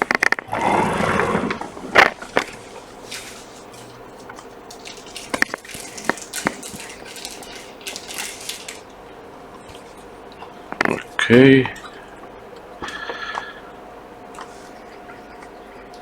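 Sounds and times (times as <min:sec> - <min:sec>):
sharp clicks and knocks: 0:00.0 - 0:00.5.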